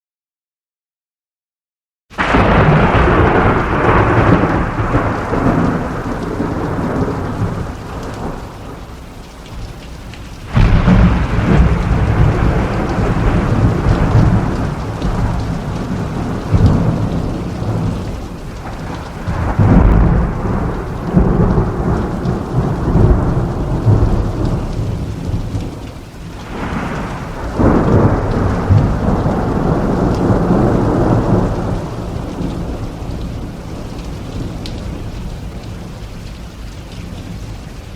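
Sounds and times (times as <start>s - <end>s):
steady rain: 2.1s - 37.9s
loud thunderclap: 2.2s - 8.8s, 10.5s - 33.6s
rolls of thunder: 2.2s - 8.8s, 10.5s - 25.8s, 26.4s - 33.6s.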